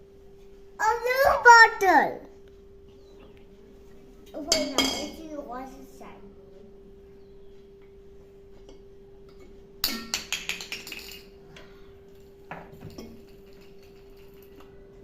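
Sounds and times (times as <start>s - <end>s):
small bottle clinking and rattling: 9.9s - 11.4s, 12.2s - 14.7s.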